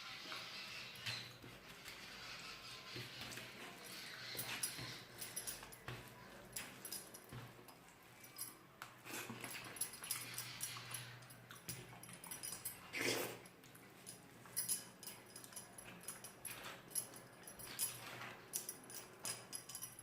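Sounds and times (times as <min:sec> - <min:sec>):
slurp: 0:12.9 - 0:13.4.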